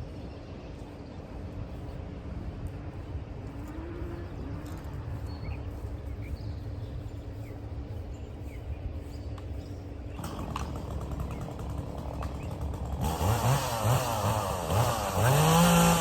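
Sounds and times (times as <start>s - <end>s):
steady low rumble: 0.0s - 10.2s.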